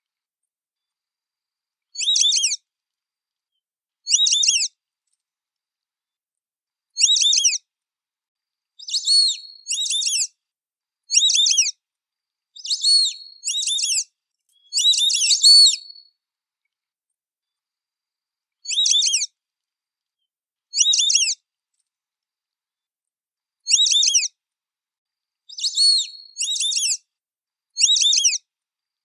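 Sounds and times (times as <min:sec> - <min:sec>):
whistling ducks calling: 0:14.7 - 0:16.0.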